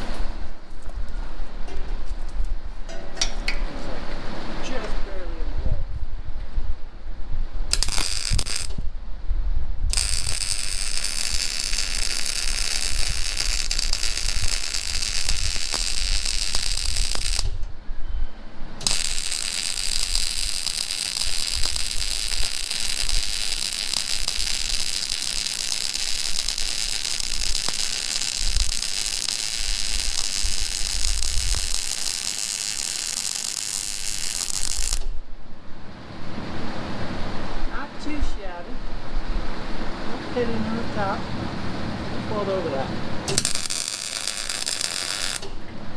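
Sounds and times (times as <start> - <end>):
arc welding crackling hiss: 7.7 - 8.9, 9.9 - 17.7, 18.8 - 35.2, 43.3 - 45.7.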